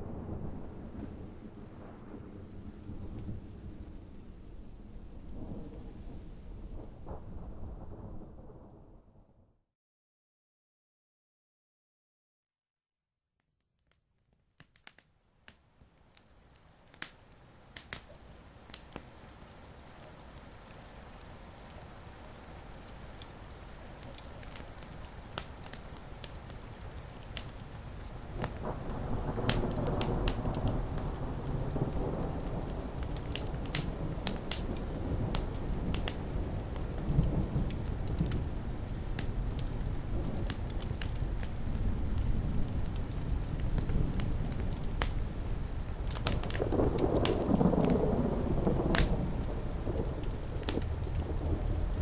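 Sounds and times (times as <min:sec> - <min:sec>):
low thunder rumble: 0:00.0 - 0:09.3, 0:27.9 - 0:52.0
wood fire crackling and popping: 0:14.6 - 0:52.0.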